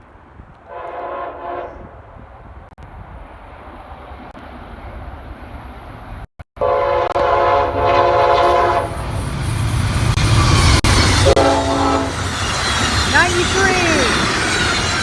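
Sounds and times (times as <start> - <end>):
rail noise: 0.0 - 15.0
train rumble: 0.0 - 15.0
locomotive air horn blast: 6.6 - 9.0, 11.2 - 12.2.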